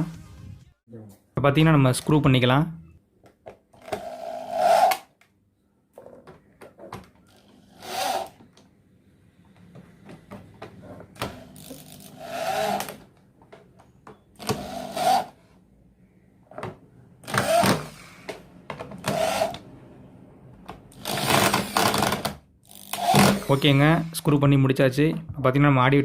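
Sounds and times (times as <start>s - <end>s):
power screwdriver driving screws: 7.3s - 8.4s, 11.2s - 13.0s, 14.4s - 15.4s, 17.2s - 18.2s, 19.0s - 19.6s, 20.9s - 24.2s.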